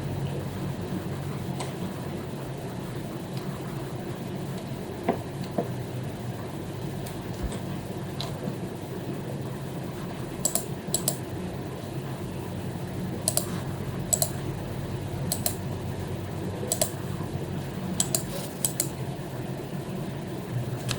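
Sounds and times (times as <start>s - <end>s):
steady low hum: 0.0s - 20.9s
keyboard clicks: 10.4s - 11.2s, 13.2s - 13.5s, 14.1s - 14.4s, 15.3s - 15.6s, 16.7s - 17.0s, 18.0s - 19.0s
mouse clicks: 10.4s - 11.2s, 13.2s - 13.5s, 14.1s - 14.4s, 15.3s - 15.6s, 16.7s - 17.0s, 18.0s - 19.0s.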